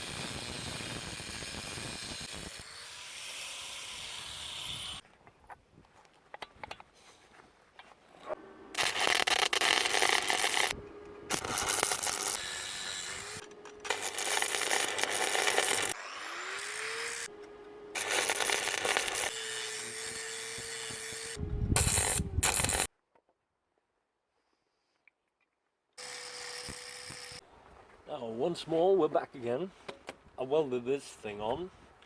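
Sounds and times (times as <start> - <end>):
angle grinder grinding steel: 0.0 - 5.0, 8.8 - 22.9, 26.0 - 27.4
grinder disc whining: 8.8 - 22.9, 26.0 - 27.4.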